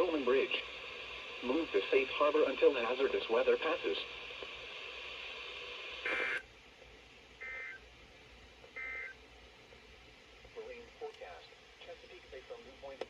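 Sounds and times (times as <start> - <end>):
radio static: 0.0 - 6.5, 7.4 - 7.9, 10.4 - 13.0.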